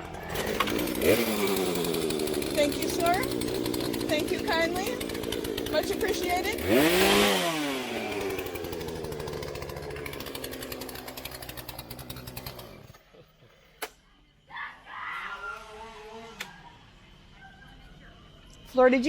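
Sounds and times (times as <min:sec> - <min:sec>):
chainsaw revving: 0:00.0 - 0:13.0.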